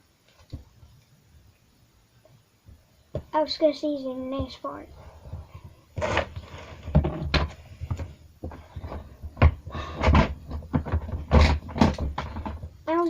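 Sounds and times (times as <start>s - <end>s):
loud thumps: 5.2s - 12.8s
hard objects knocking and rattling: 5.2s - 12.9s.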